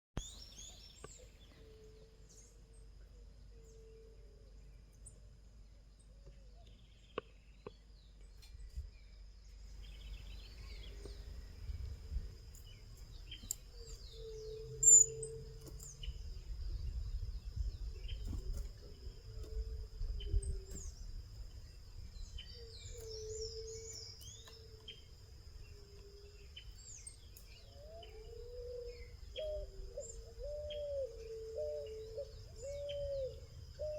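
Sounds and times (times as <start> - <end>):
birds chirping: 0.2 - 33.9
low background rumble: 2.2 - 24.2
low cooing: 27.8 - 33.9.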